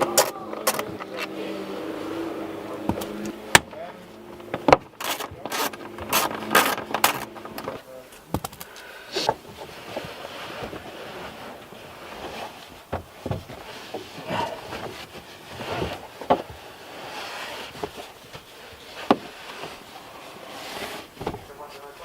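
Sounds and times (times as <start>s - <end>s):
car seat parts clicking and scraping: 0.0s - 22.0s.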